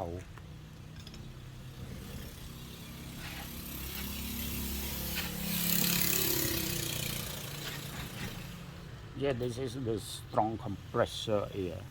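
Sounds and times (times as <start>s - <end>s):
air compressor humming: 1.5s - 9.6s
compressed air hissing from nozzle: 1.9s - 8.7s.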